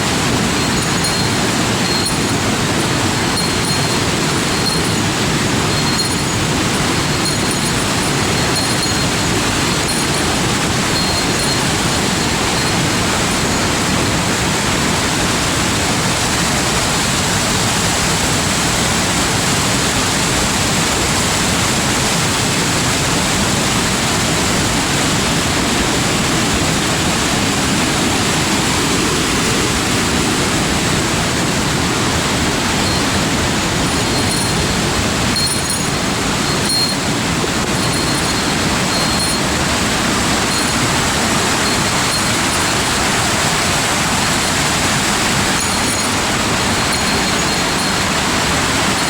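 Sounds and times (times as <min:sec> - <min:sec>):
waterfall rushing: 0:00.0 - 0:49.0.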